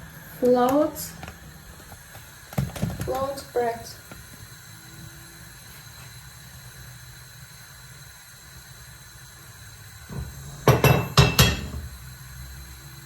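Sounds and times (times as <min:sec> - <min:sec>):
kitchenware clinking and knocking: 0:10.1 - 0:11.9.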